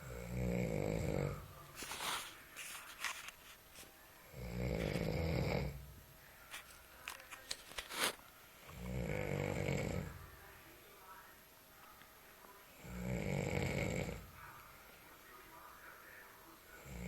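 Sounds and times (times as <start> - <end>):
person snoring: 0.0 - 1.5, 4.3 - 5.8, 8.6 - 10.2, 12.8 - 14.3, 16.8 - 17.0.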